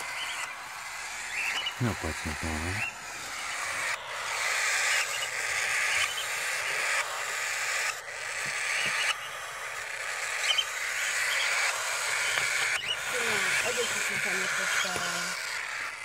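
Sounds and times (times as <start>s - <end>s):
baby cockatiels hissing begging calls: 0.0s - 16.0s.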